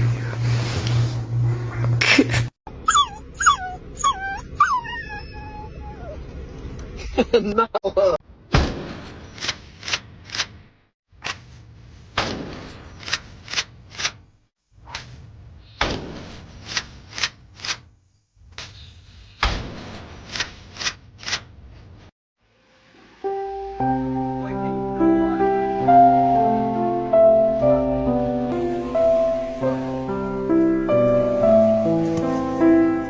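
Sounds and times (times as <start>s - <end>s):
gentle keyboard music: 23.2s - 33.0s.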